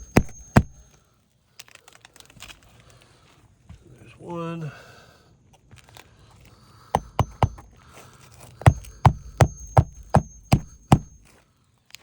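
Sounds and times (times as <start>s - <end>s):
hammer driving roofing nail: 0.0s - 0.8s, 7.0s - 7.7s, 8.7s - 11.2s.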